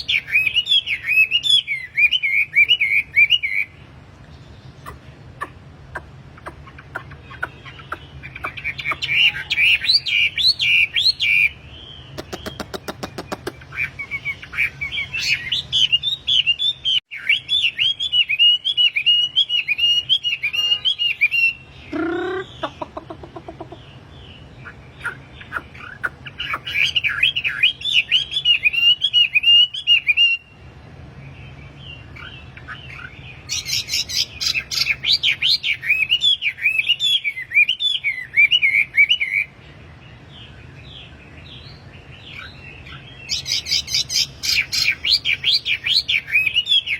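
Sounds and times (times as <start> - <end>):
bird twittering song: 0.0 - 46.9.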